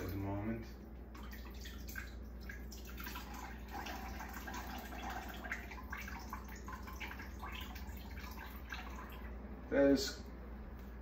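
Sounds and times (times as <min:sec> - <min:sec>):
water splashing in sink: 0:01.1 - 0:09.4.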